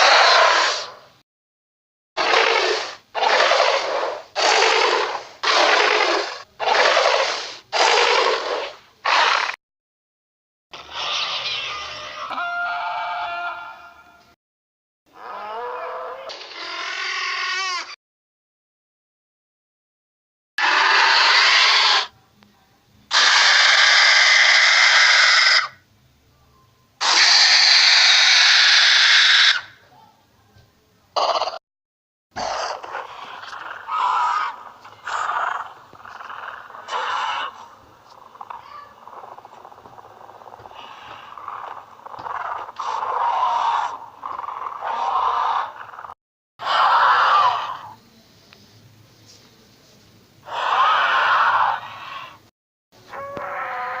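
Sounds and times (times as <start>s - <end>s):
hiss-like dinosaur screeches: 0.0s - 1.0s, 2.2s - 9.6s, 10.8s - 13.6s, 16.1s - 18.0s, 20.6s - 22.1s, 23.1s - 25.8s, 27.0s - 29.8s, 32.4s - 37.7s, 38.5s - 48.0s, 50.4s - 52.4s
dinosaur breathy hissing: 2.2s - 8.7s, 40.6s - 41.5s.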